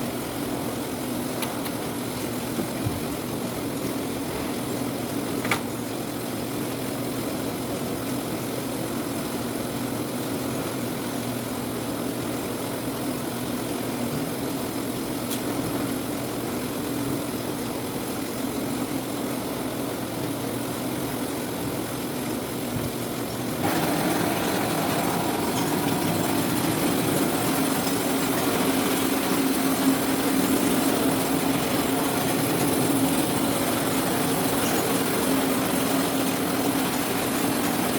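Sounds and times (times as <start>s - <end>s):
sorting machine drone and rattle: 19.6s - 37.9s.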